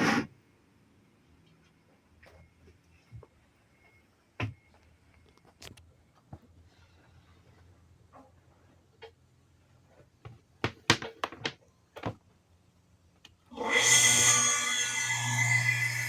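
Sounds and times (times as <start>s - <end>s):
well pump motor humming and whining: 13.5s - 16.0s.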